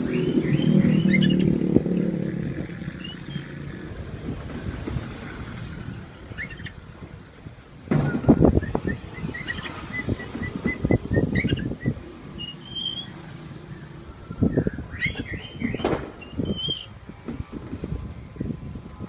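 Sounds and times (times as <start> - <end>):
bird chirping: 0.0 - 2.0, 2.7 - 3.8, 5.9 - 6.8, 8.0 - 17.0.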